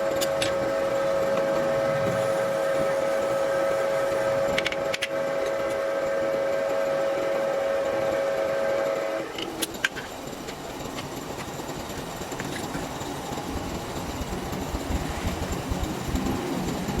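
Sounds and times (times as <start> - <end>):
lathe high-pitched squeal: 0.0 - 9.0
lathe rumbling grinding: 0.0 - 17.0.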